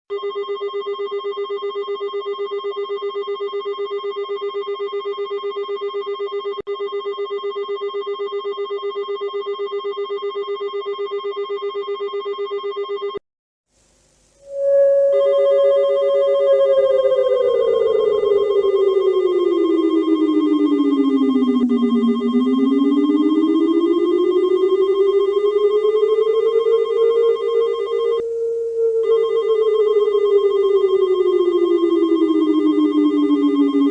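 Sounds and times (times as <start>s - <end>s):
rapidly pulsing buzzing tone: 14.2s - 33.9s
siren falling and rising: 14.4s - 33.9s.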